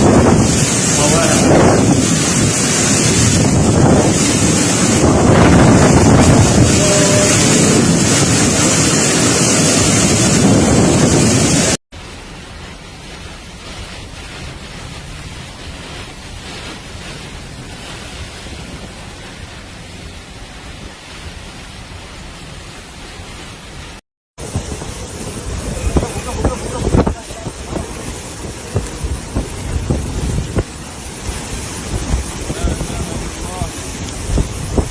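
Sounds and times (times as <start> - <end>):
strong wind rushing: 0.0 - 11.8, 23.7 - 34.9
wind buffeting microphone: 0.0 - 11.8, 24.4 - 34.9
heavy rain: 0.0 - 34.9.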